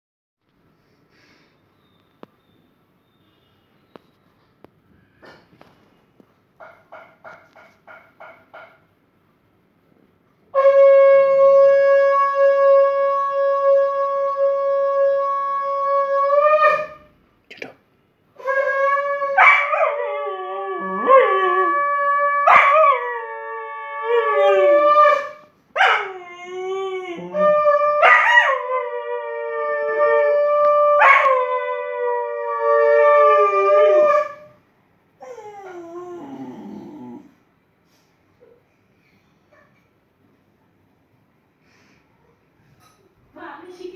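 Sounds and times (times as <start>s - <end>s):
conch shell blown: 10.6s - 16.8s
dog howling: 18.4s - 34.5s, 35.2s - 37.4s.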